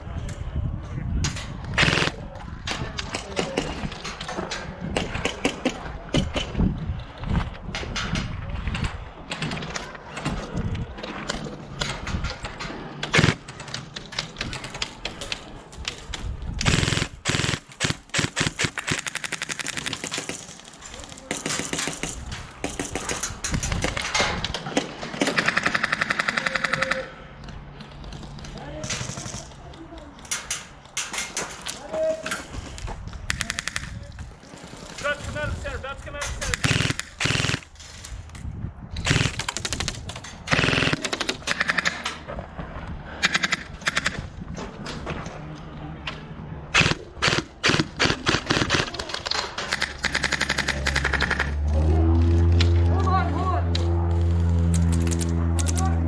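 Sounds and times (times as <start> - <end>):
airsoft guns firing: 1.7 - 2.3, 2.9 - 6.6, 12.4 - 15.1, 16.6 - 27.1, 33.3 - 34.0, 36.5 - 37.8, 39.0 - 42.3, 43.2 - 44.3, 46.8 - 51.5
rapid full-auto burst: 1.8 - 2.2, 13.0 - 13.6, 16.6 - 20.6, 25.2 - 27.0, 36.5 - 37.7, 39.0 - 42.1, 43.2 - 44.3, 46.8 - 51.5.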